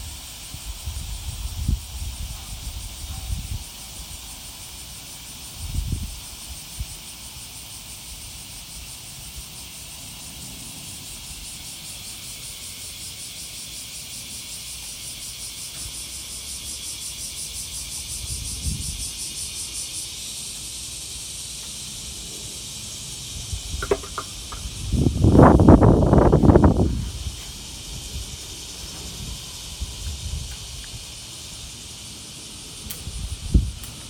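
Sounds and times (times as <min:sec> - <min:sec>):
cicadas buzzing: 0:00.0 - 0:34.0
low thumps on microphone: 0:23.8 - 0:25.1.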